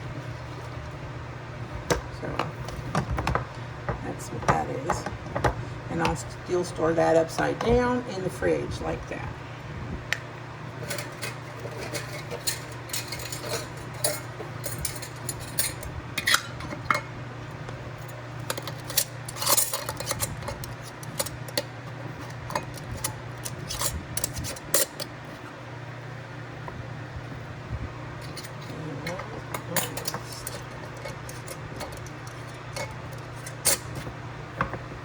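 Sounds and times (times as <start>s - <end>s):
utensils and jars clinking: 10.8s - 17.1s, 18.4s - 25.1s, 28.2s - 34.1s.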